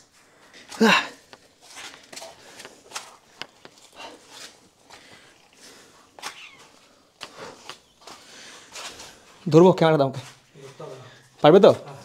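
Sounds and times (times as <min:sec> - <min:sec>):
person breathing hard: 0:03.8 - 0:06.2, 0:07.0 - 0:09.4.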